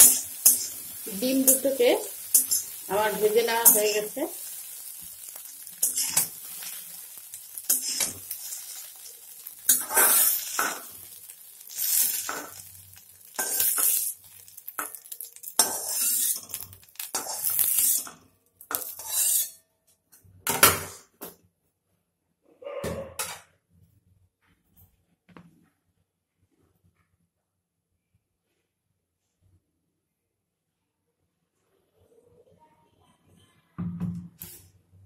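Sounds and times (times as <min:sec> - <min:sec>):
hot oil sizzling: 0:00.0 - 0:19.5
spatula scraping in a wok: 0:00.0 - 0:19.6.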